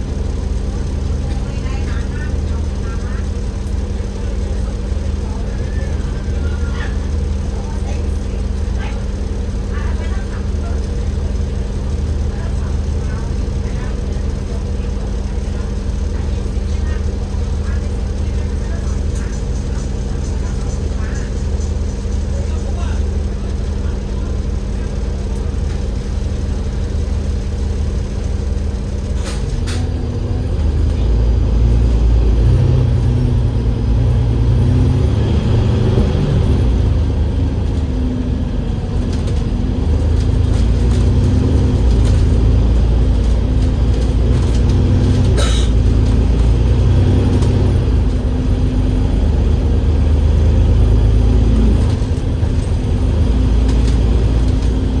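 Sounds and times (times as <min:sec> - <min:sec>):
bus diesel engine running: 0:00.0 - 0:55.0.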